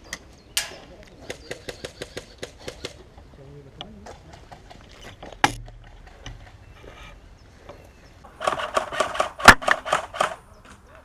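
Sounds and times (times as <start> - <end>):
airsoft gun shots: 8.4 - 10.4.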